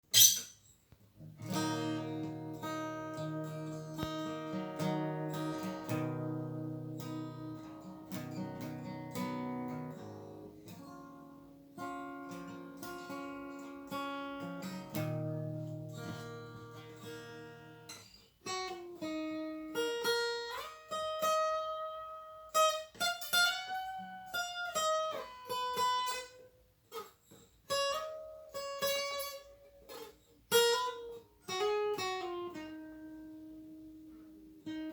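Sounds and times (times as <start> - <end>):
guitar playing: 1.2 - 27.1, 27.7 - 34.9.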